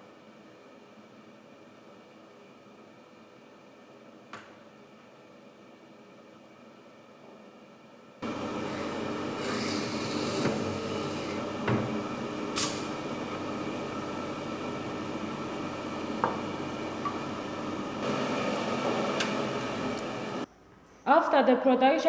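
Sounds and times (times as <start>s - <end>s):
woodworking machine running: 8.2s - 20.4s.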